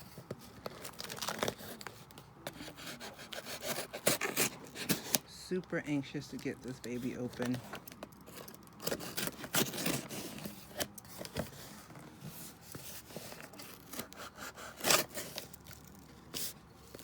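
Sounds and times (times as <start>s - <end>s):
cardboard scraping and rustling: 0.0s - 5.3s, 6.8s - 17.0s
packing tape tearing: 0.6s - 5.2s, 7.3s - 11.6s, 13.2s - 17.0s.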